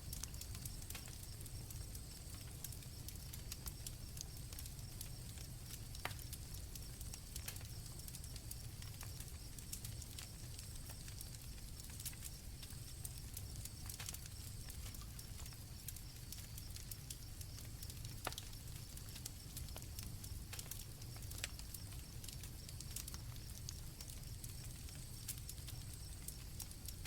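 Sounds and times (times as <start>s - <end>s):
campfire crackling: 0.0s - 27.0s
crickets chirping: 6.8s - 20.4s, 21.1s - 27.0s.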